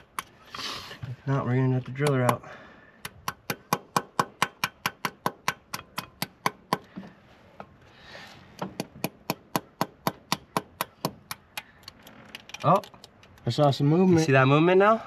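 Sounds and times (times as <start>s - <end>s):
hammer tapping on metal: 3.0s - 6.9s, 8.6s - 11.7s.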